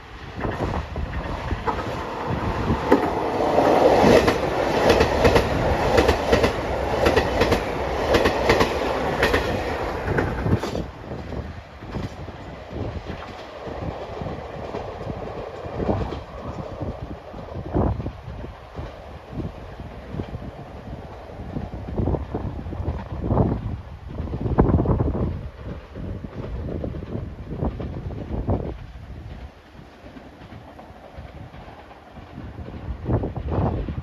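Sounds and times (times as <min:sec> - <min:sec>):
train rumble: 0:00.0 - 0:34.0
train wheels clacking over rail joints: 0:00.4 - 0:17.4, 0:25.3 - 0:33.2.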